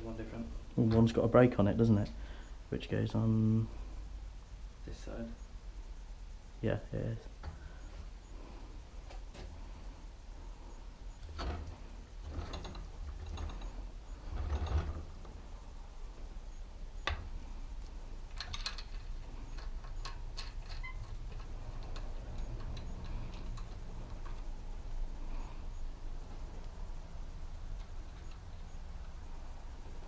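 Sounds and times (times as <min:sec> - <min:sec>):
light irregular clicks and taps: 0:17.0 - 0:25.0.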